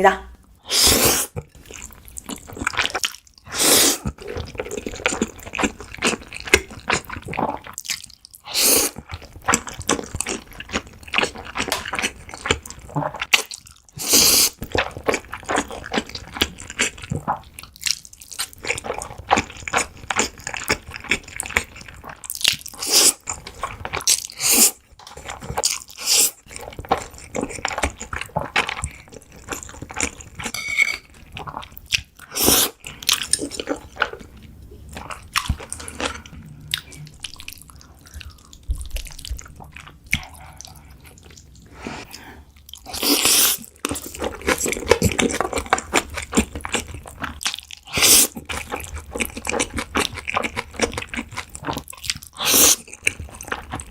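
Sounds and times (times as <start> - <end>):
noodle slurps: 0.6 - 1.4
wet chewing: 0.7 - 30.6, 31.2 - 53.9.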